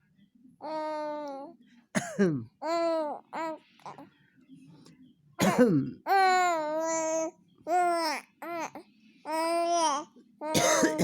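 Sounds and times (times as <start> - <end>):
baby babbling: 0.6 - 1.5, 2.6 - 4.0, 6.0 - 10.6.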